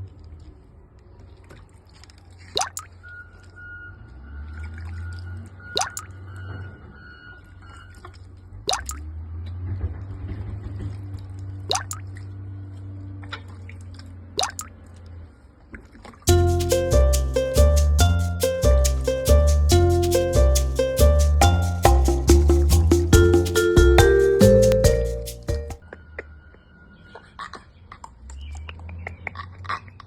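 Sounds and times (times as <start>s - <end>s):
water drops plinking: 2.6s - 2.9s, 5.1s - 6.2s, 8.7s - 9.0s, 11.7s - 12.1s.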